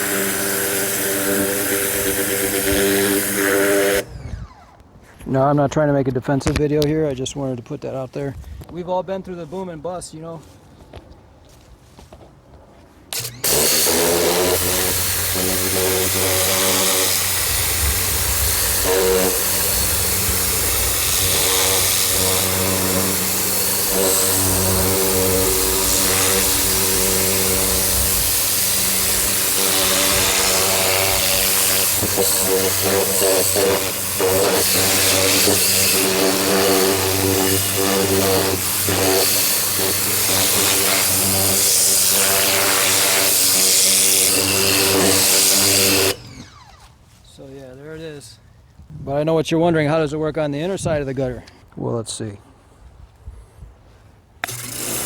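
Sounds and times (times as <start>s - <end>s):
water spray hissing: 0.0s - 4.1s, 13.2s - 46.2s
pressure washer motor humming: 0.0s - 4.8s, 13.1s - 47.0s, 54.4s - 55.0s.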